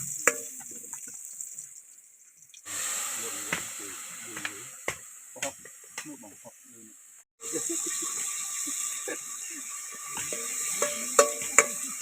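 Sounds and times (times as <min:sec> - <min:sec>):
food sizzling in a pan: 0:00.0 - 0:12.0
utensil scraping and clinking on pan: 0:10.0 - 0:12.0.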